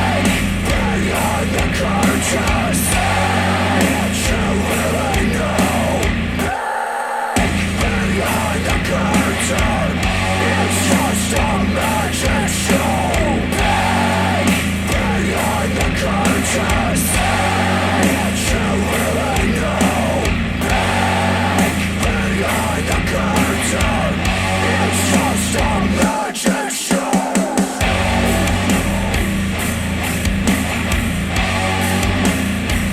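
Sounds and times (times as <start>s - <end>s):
heavy rock music over speakers: 0.0s - 32.9s.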